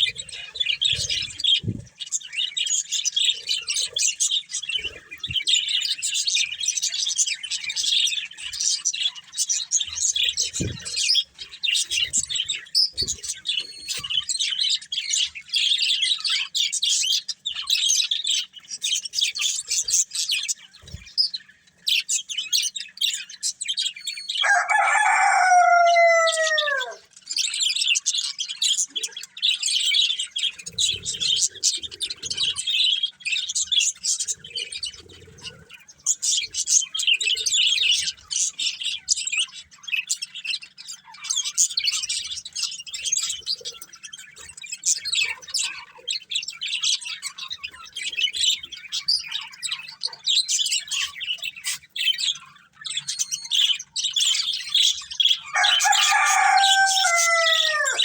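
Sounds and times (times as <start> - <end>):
budgerigars chattering: 0.0 - 58.0
bird call with falling pitch: 24.3 - 27.1, 55.4 - 58.0.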